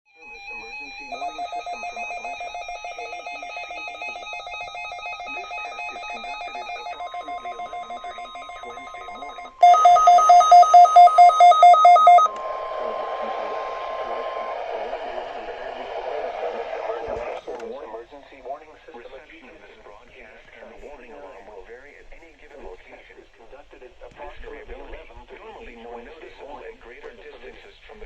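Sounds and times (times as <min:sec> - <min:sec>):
steady warning alarm tone: 0:00.1 - 0:17.0
rapid beeping: 0:00.2 - 0:17.4
hissy radio broadcast: 0:11.3 - 0:28.0.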